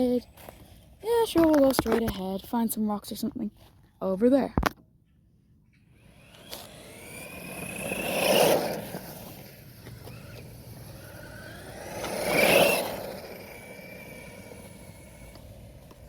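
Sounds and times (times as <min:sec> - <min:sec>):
electric motor whining: 0:06.0 - 0:16.0.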